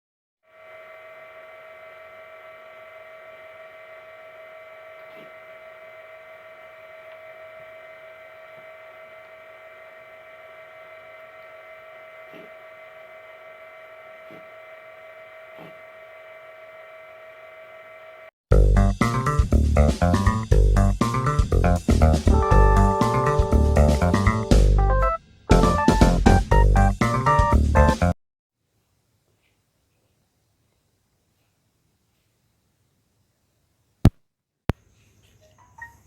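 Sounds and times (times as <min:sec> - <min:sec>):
steady electrical hum: 0:00.5 - 0:18.2.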